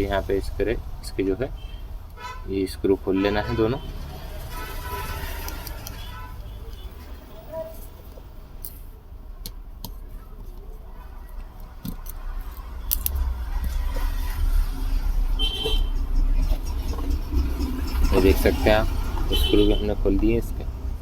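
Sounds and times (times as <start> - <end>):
steady low rumble: 5.0 - 21.0
screwdriver metallic clicks: 11.8 - 13.2.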